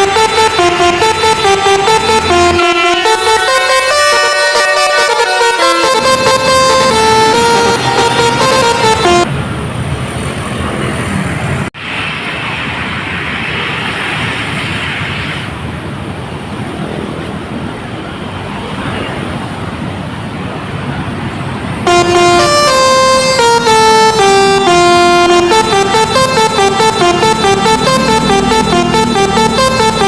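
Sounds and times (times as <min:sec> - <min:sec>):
bus horn playing a tune: 0:00.0 - 0:09.3, 0:21.8 - 0:30.0
passing traffic: 0:00.0 - 0:30.0.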